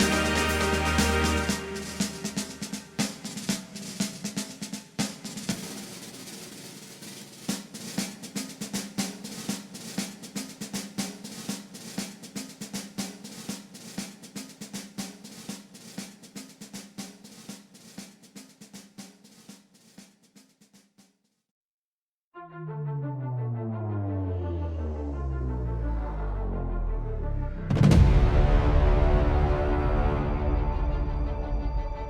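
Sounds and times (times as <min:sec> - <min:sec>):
snare drum roll: 0:00.0 - 0:21.2, 0:27.7 - 0:30.2.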